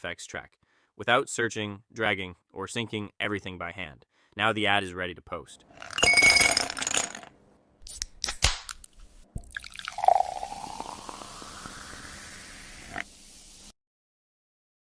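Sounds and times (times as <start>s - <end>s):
glass clinks and clicks: 5.8s - 7.2s
liquid pouring into a glass: 9.4s - 13.7s.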